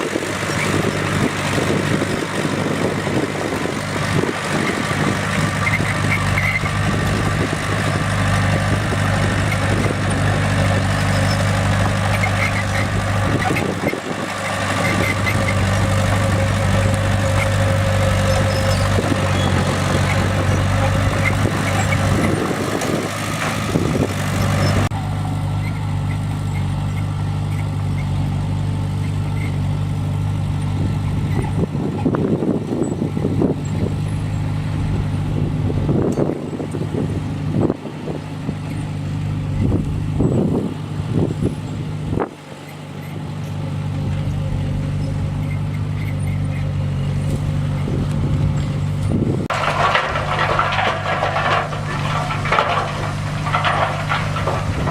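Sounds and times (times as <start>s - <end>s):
bulldozer diesel engine running: 0.0s - 54.9s.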